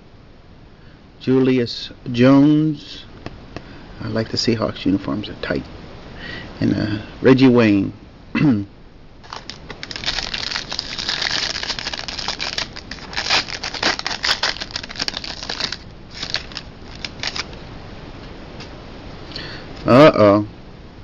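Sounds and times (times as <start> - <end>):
card packaging crinkling: 9.2 - 17.6.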